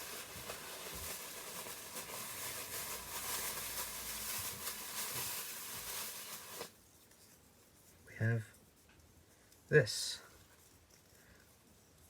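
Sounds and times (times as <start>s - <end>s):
plastic packaging rustling: 0.0s - 6.8s.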